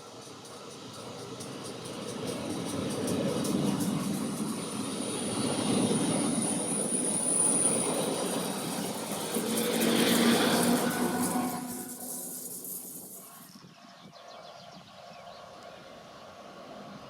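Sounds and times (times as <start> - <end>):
train rumbling past: 0.0 - 13.6
thin high whine: 3.5 - 13.8.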